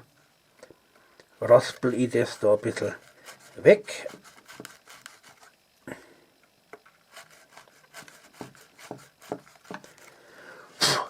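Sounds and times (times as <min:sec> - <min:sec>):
hand rasp scraping leather: 0:02.2 - 0:05.5, 0:07.1 - 0:10.2.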